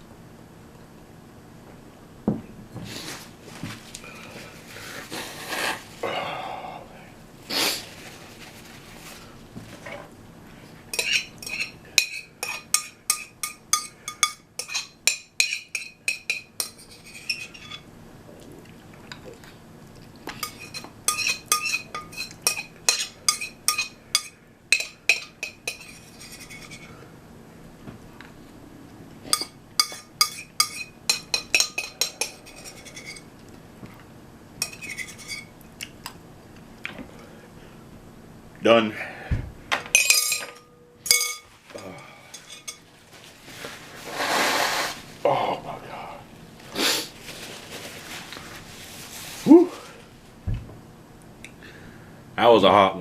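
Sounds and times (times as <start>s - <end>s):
soft noisy sounds: 0.0s - 53.0s
utensil scraping a bowl: 10.9s - 17.8s, 20.3s - 27.0s, 29.3s - 33.3s, 34.6s - 35.5s.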